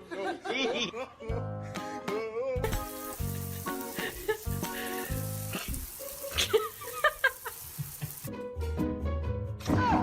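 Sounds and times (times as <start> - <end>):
background music: 0.0 - 10.0
steady hiss: 2.7 - 8.4.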